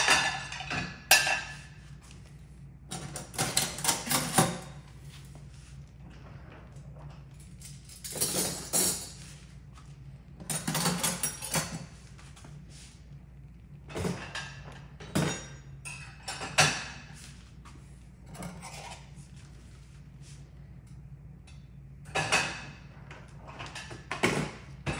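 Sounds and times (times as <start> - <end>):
dishes clattering: 0.0 - 1.8, 8.0 - 9.2, 10.4 - 11.9, 22.0 - 22.9
steady low hum: 0.0 - 24.9.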